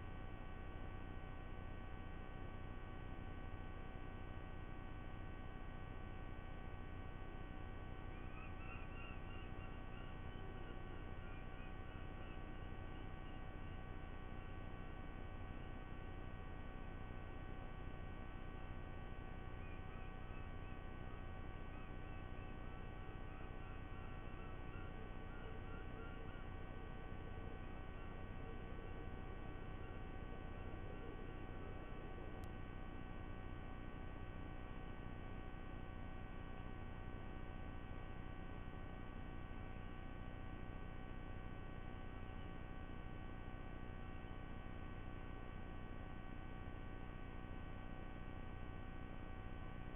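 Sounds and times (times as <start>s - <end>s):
faint steady tones: 0.0s - 49.9s
low electrical hum: 0.0s - 49.9s
faint short chirps: 7.8s - 14.9s, 19.3s - 32.4s.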